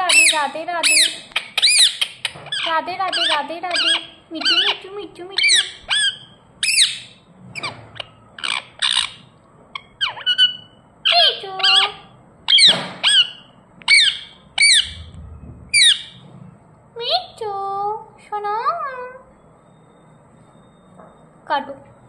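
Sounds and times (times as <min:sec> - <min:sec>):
parrot high-pitched calls: 0:00.0 - 0:15.1, 0:15.7 - 0:16.2.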